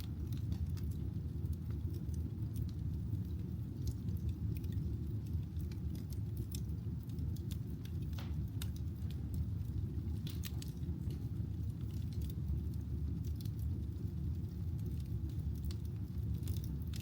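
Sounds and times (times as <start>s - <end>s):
firewood crackling and popping: 0.0s - 17.0s
flames rushing: 0.0s - 17.0s.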